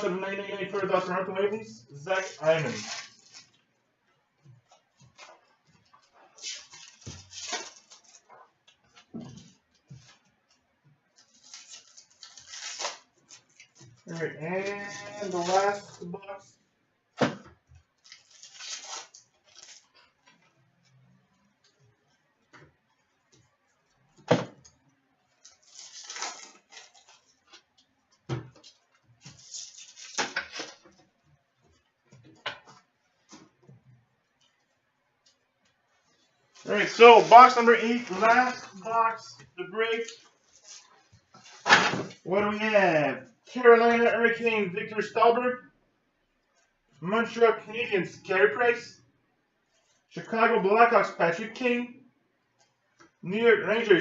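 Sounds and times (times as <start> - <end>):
cardboard and foil rustling: 1.9 - 3.6, 4.9 - 10.2, 11.2 - 16.1, 18.0 - 20.2, 25.4 - 27.8, 28.6 - 30.9, 36.0 - 42.3
wrapper crinkling and tearing: 2.0 - 3.7, 6.3 - 8.3, 11.2 - 16.1, 18.0 - 20.2, 25.4 - 27.8, 28.6 - 30.8, 36.6 - 38.9.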